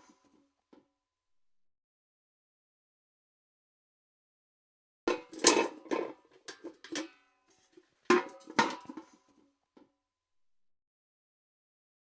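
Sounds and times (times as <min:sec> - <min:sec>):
metal bucket clanking: 0:05.1 - 0:09.2.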